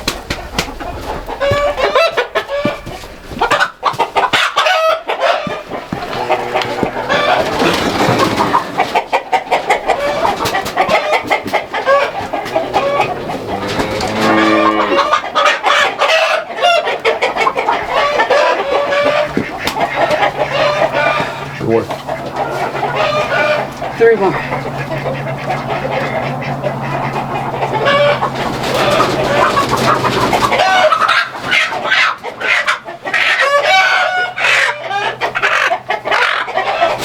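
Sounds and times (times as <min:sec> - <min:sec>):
chickens clucking and squawking: 0:00.0 - 0:37.0
rooster crowing: 0:04.6 - 0:08.0, 0:11.7 - 0:16.5.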